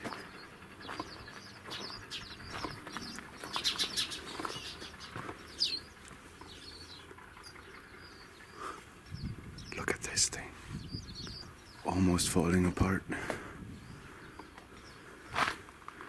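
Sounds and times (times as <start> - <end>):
faint outdoor background: 0.0 - 16.0
small birds chirping: 0.0 - 16.0.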